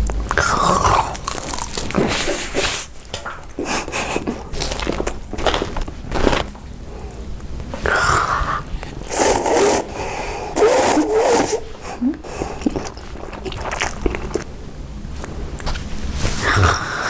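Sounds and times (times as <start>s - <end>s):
biting and crunching: 0.0s - 9.8s, 12.3s - 15.8s
mouth noises: 7.8s - 14.6s.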